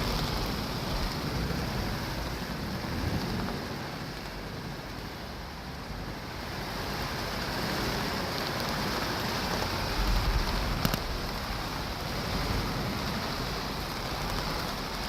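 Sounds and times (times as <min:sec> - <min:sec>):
heavy rain: 0:00.0 - 0:15.0
thunder rumbling: 0:09.5 - 0:15.0.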